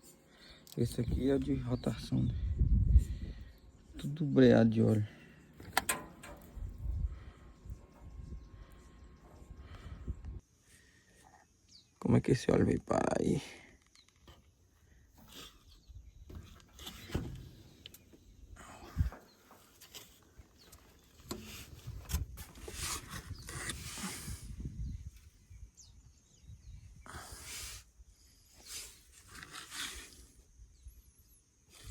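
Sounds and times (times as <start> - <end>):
clicks and knocks: 5.6 - 6.6.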